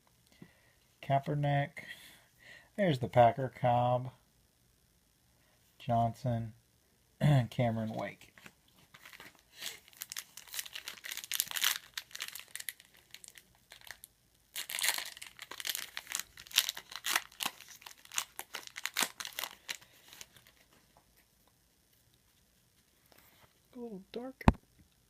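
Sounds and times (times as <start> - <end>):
foil wrapper crinkling and tearing: 8.8 - 20.8.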